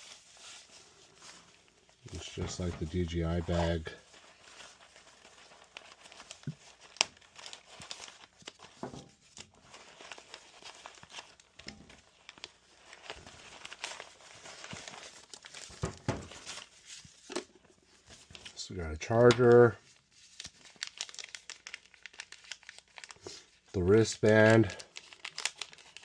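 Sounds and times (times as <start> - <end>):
packaging crinkling and rustling: 0.0 - 26.0.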